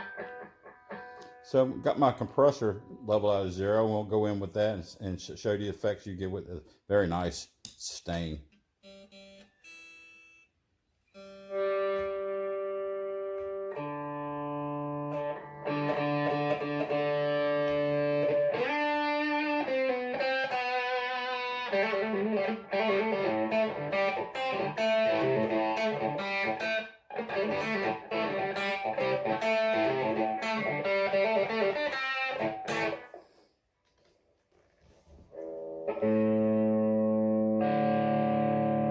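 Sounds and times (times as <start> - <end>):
electric guitar with long sustain: 0.0 - 1.6, 11.2 - 33.3, 35.3 - 38.9.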